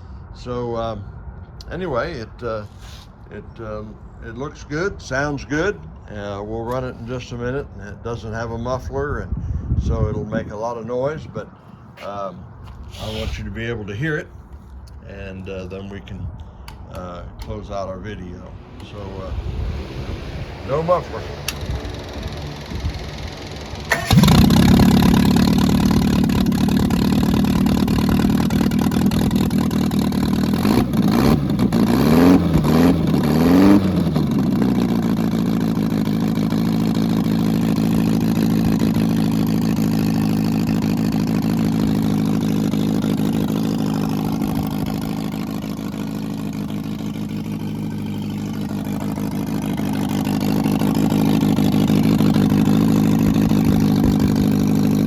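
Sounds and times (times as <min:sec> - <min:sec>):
unsilenced car engine revving: 0:16.2 - 0:55.0.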